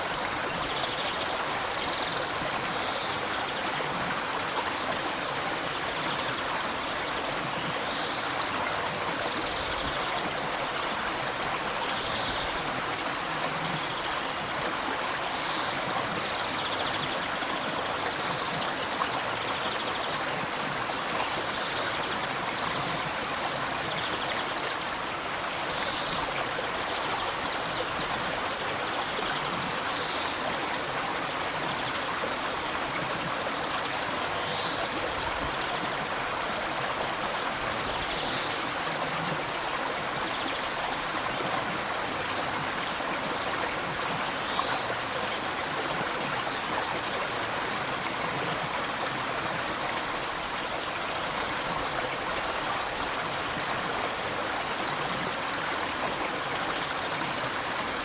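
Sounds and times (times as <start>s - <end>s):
river water flowing: 0.0s - 58.0s.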